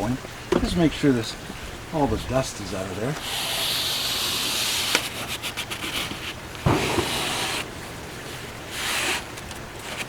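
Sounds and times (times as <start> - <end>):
scratchy rubbing in window channel: 3.2 - 10.0.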